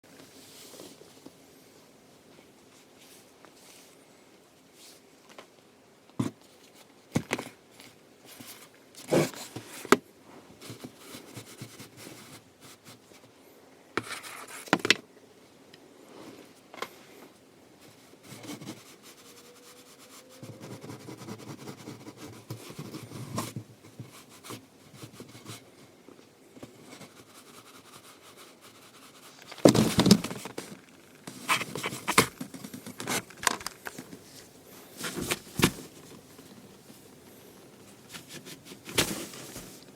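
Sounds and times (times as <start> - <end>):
cat scuffling and scraping: 26.7 - 39.9.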